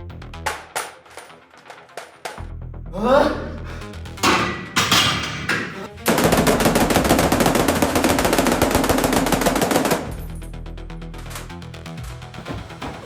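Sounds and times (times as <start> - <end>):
automatic gunfire: 6.1 - 10.3.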